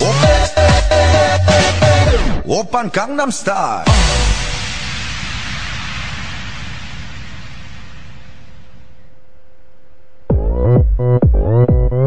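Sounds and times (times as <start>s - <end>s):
noise hiss: 3.9s - 10.3s.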